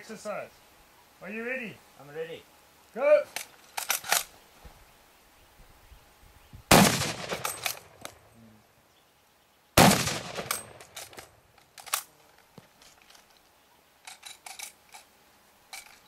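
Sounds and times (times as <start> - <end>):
rifle action clacking: 3.4 - 4.3, 10.1 - 12.1
rifle shots: 6.7 - 8.2, 9.8 - 11.3.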